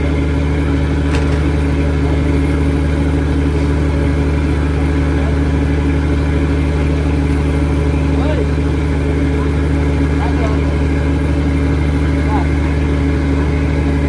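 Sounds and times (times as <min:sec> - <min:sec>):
boat engine droning: 0:00.0 - 0:14.0.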